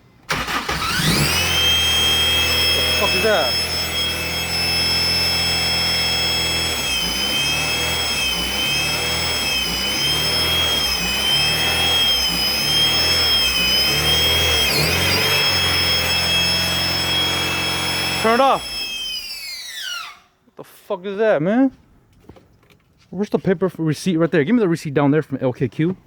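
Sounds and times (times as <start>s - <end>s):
high-pitched screech: 0.3s - 20.3s.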